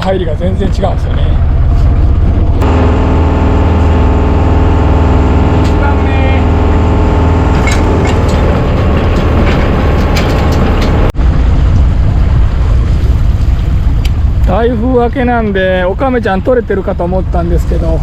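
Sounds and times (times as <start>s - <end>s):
boat motor humming: 1.4s - 14.5s.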